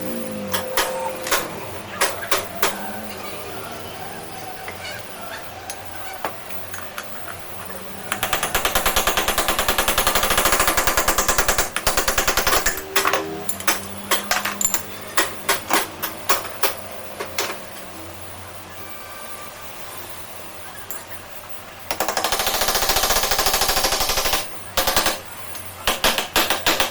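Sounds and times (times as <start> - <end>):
rapid mechanical knocking: 0.0 - 3.2, 8.0 - 17.6, 21.9 - 26.9.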